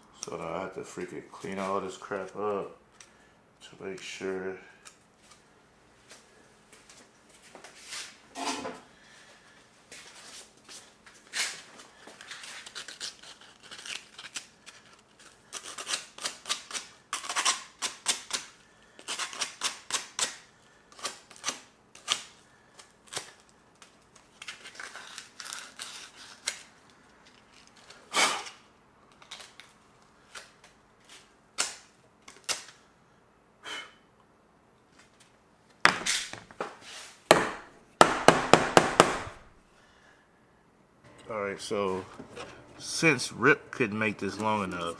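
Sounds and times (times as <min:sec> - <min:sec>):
sharp knocks: 0:37.3 - 0:39.4.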